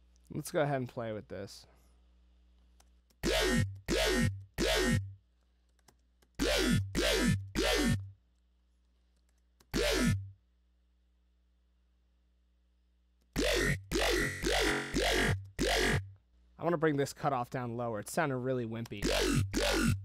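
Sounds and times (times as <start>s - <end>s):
distorted dubstep bass hits: 9.8s - 10.2s, 13.4s - 16.0s, 19.0s - 20.0s.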